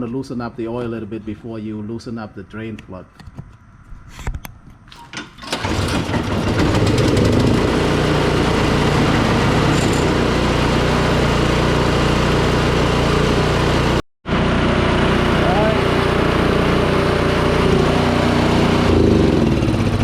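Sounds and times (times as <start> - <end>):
snowblower engine running: 5.4 - 20.0.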